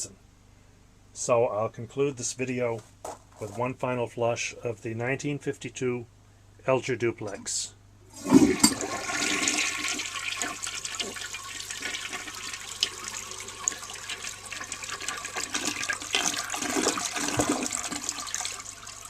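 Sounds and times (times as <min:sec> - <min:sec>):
toilet flushing: 0:08.1 - 0:19.0.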